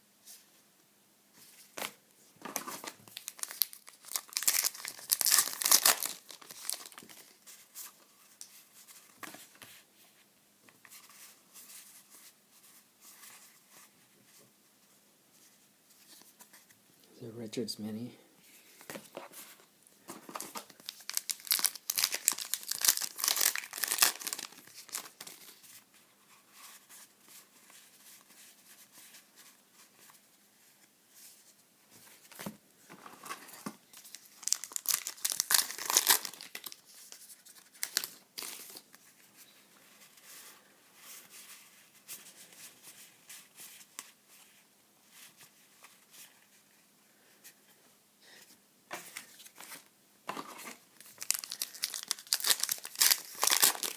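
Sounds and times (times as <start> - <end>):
card pack wrappers tearing: 3.1 - 7.3, 20.6 - 25.4, 34.1 - 36.8, 51.0 - 53.9.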